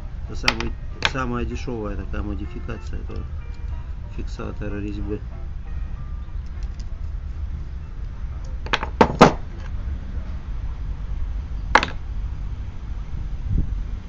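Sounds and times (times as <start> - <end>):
train rumbling past: 0.0 - 8.8, 9.4 - 14.0
dull knock: 8.8 - 9.4.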